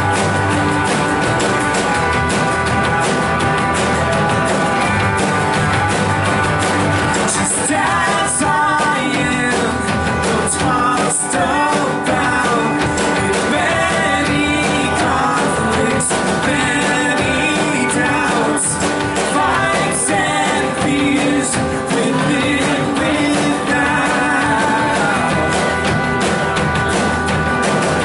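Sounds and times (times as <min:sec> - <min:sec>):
live rock band playing: 0:00.0 - 0:28.0
person singing: 0:07.1 - 0:27.8.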